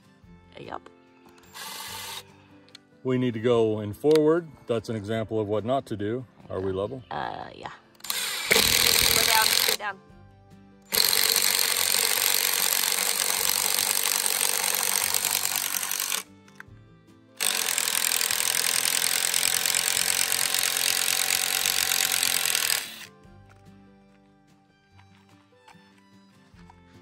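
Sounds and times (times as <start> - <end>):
post-hole auger boring: 1.5 - 2.3, 8.0 - 9.8, 10.9 - 16.2, 17.4 - 23.1.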